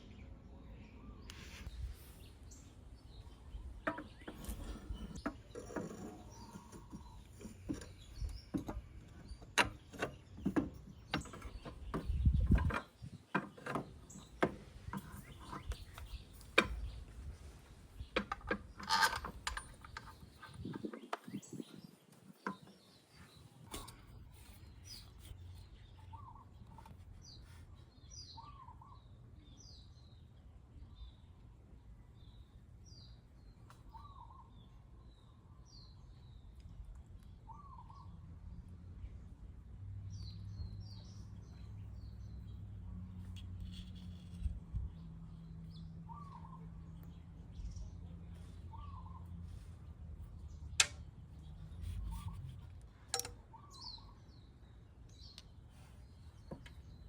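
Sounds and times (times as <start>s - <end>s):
birds chirping: 0.0s - 38.3s, 39.0s - 57.0s.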